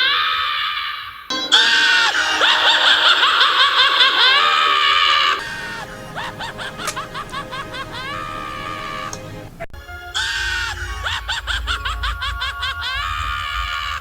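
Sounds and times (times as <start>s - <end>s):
cartoon snickering laugh: 2.0s - 9.2s, 10.6s - 13.3s.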